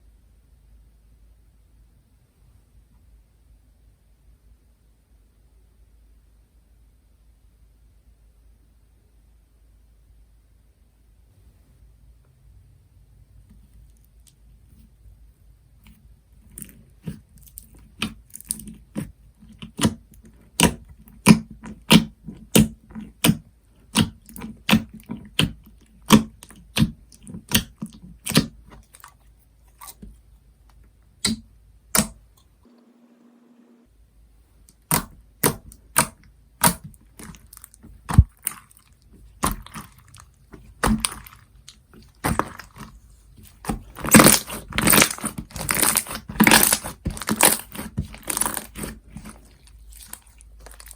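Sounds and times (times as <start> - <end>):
slime popping and clicking: 34.7 - 38.6, 43.6 - 49.4.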